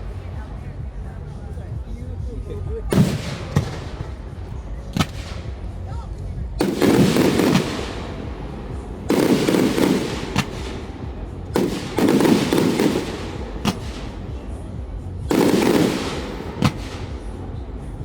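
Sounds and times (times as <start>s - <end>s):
firework booms: 2.6s - 17.9s
sharp firework crack: 2.9s - 6.0s, 6.6s - 17.9s.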